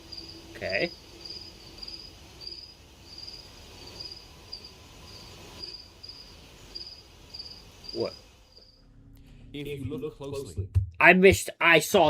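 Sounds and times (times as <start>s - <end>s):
crickets chirping: 0.0s - 9.1s.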